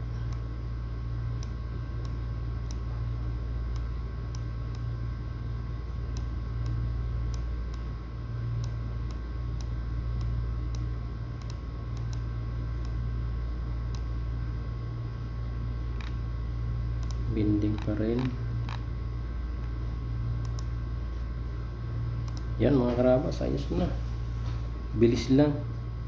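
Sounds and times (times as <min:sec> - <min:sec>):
steady low hum: 0:00.0 - 0:26.0
light irregular clicks: 0:08.6 - 0:13.0, 0:17.0 - 0:17.2, 0:20.4 - 0:20.7.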